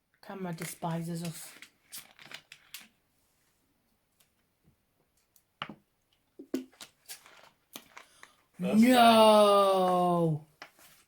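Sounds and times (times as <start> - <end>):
small rustles: 0.5 - 4.4.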